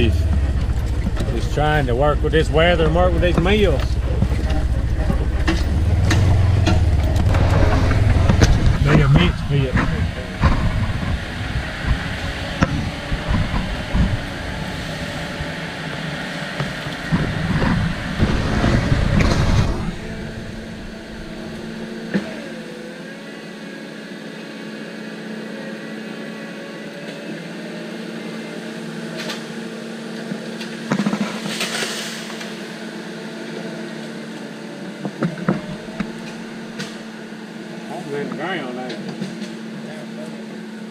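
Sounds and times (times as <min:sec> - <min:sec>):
heavy low rumble with knocks: 0:00.0 - 0:22.7, 0:35.0 - 0:37.0
steady mechanical hum: 0:00.0 - 0:40.9.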